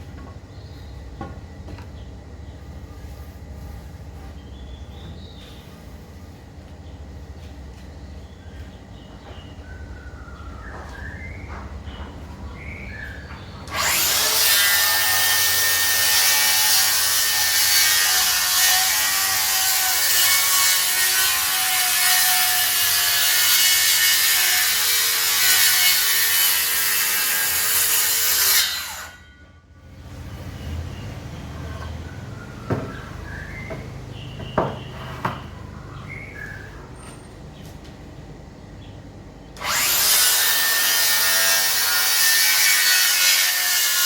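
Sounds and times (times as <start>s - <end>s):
circular saw cutting wood: 13.7s - 29.3s, 39.6s - 44.0s.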